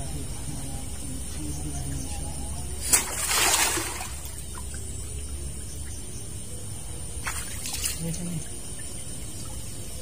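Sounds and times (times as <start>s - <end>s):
water splash: 2.8s - 4.7s, 7.2s - 8.2s.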